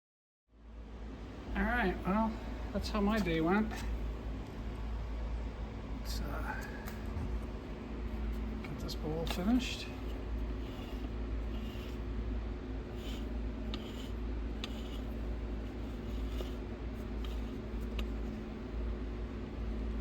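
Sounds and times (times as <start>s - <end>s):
lathe running: 1.6s - 18.7s
scratchy rubs against bowl: 8.2s - 18.5s.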